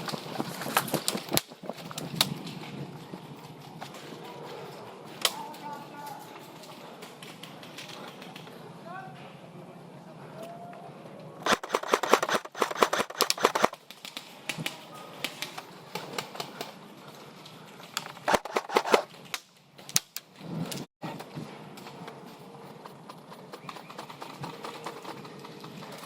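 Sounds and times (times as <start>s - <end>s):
airsoft rifle firing bursts: 11.5s - 13.8s, 18.2s - 19.1s.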